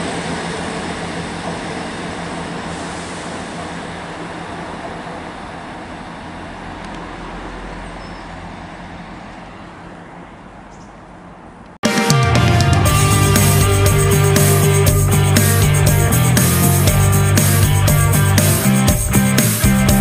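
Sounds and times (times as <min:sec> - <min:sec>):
train rumbling past: 0:00.0 - 0:20.0.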